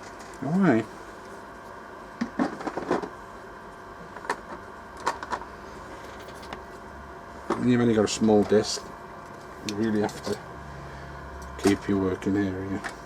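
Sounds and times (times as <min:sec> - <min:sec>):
tools clattering on a workbench: 0:09.7 - 0:10.4.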